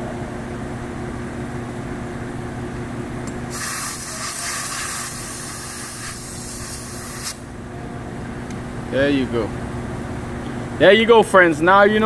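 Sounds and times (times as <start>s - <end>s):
compressed air hissing into tire: 3.5s - 7.4s.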